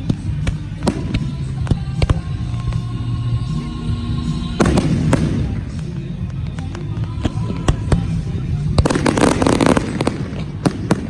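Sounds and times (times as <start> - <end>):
fireworks bangs and crackling: 0.0 - 11.0
music playing: 0.0 - 11.0.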